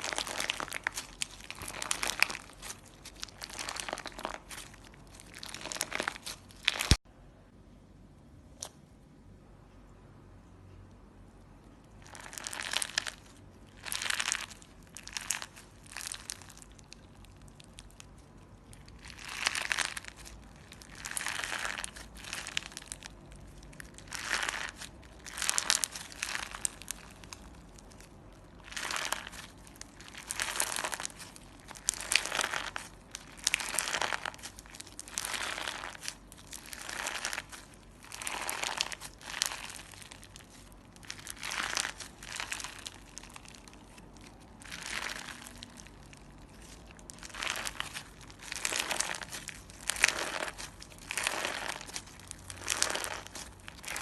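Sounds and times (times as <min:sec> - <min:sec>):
slime squished by hand: 0:00.0 - 0:07.0, 0:11.8 - 0:54.0.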